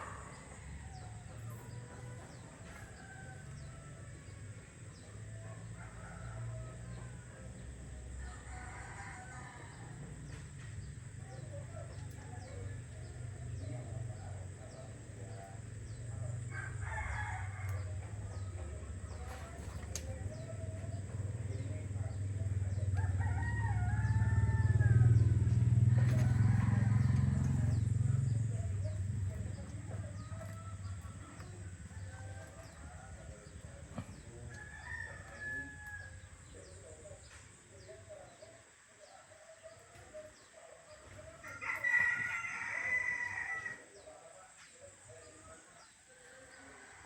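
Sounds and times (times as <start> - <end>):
rooster crowing: 0.0 - 4.7, 5.4 - 7.6, 8.2 - 10.2, 15.9 - 19.6, 23.0 - 36.7, 41.0 - 43.9, 46.1 - 47.0
low rumble: 23.8 - 34.2.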